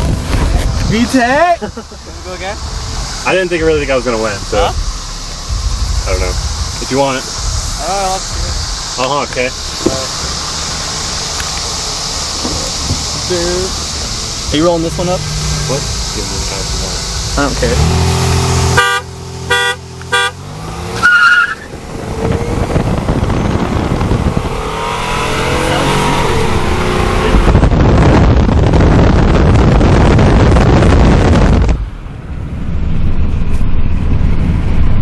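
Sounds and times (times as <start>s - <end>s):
loud rushing noise: 0.0s - 21.0s, 21.6s - 35.0s
car engine revving and accelerating: 0.0s - 35.0s
car horn honks: 18.4s - 21.7s.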